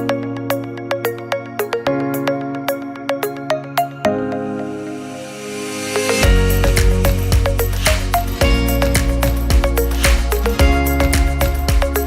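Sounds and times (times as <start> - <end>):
heavy bass: 6.2 - 12.0
percussive beat: 6.2 - 12.0.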